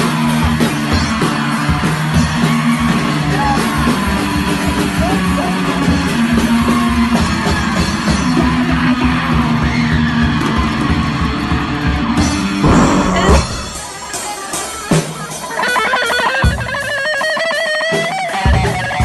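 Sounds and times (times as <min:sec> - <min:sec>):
distorted electric guitar riffs: 0:12.6 - 0:14.1
yelled vocals: 0:12.6 - 0:14.1
fast dense drumming: 0:12.6 - 0:14.2.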